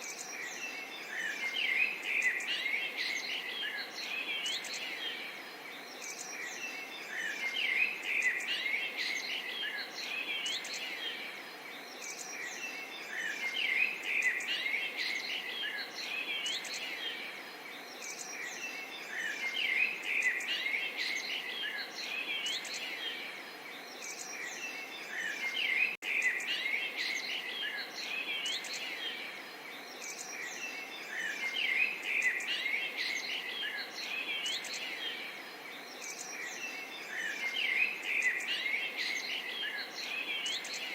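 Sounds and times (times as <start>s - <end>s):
small birds chirping: 0.0s - 40.9s.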